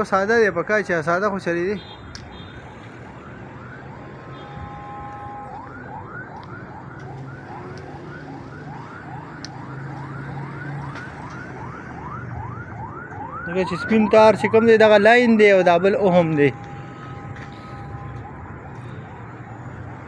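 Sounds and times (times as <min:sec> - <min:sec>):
electronic siren wail: 0:02.4 - 0:20.0
steady multi-pitch tone: 0:13.5 - 0:18.7.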